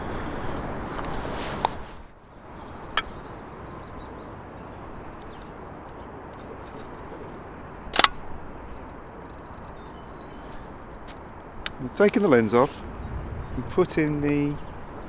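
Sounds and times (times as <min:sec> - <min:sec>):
outdoor background hiss: 0:00.0 - 0:15.0
camera mechanical clicks: 0:08.0 - 0:10.2.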